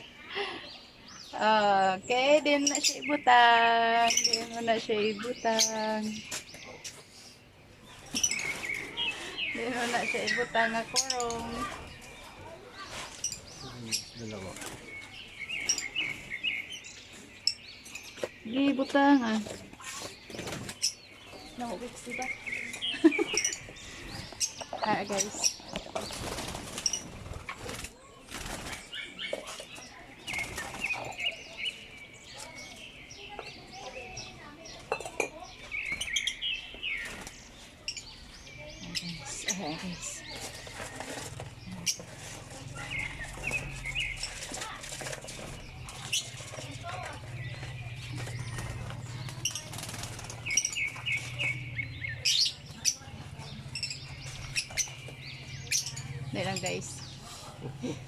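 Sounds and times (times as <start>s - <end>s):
high bird chirps: 0.0s - 27.7s, 28.6s - 57.2s
birds fluttering wings: 8.0s - 17.3s, 18.2s - 31.4s, 36.9s - 38.3s, 39.2s - 58.0s.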